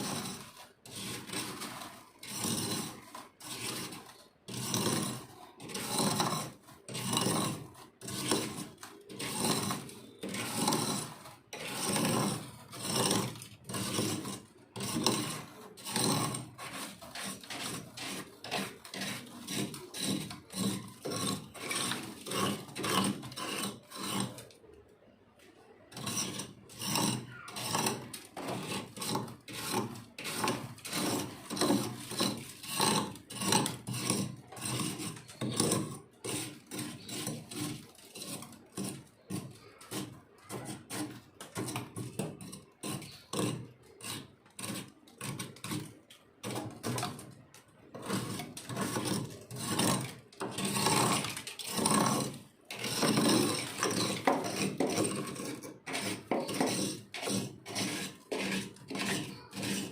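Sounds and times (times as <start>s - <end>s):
frost crunching and scraping: 0.0s - 24.5s, 25.9s - 59.9s.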